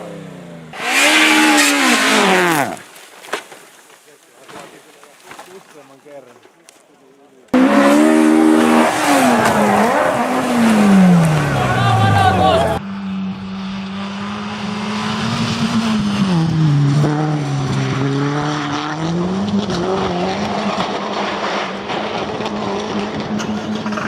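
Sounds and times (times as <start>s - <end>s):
rally car engine revving: 0.0s - 2.8s, 7.5s - 24.0s
tyres on gravel: 0.8s - 7.6s.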